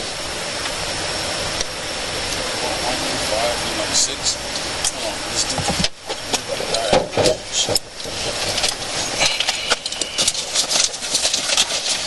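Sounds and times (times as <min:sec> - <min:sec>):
road traffic noise: 0:00.0 - 0:12.0
rustles and clicks near microphone: 0:04.5 - 0:12.0.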